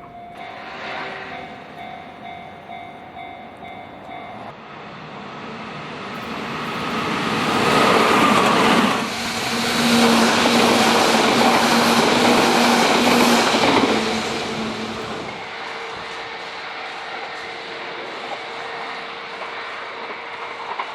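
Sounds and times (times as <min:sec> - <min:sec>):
train wheels clattering on rails: 0:05.8 - 0:20.9.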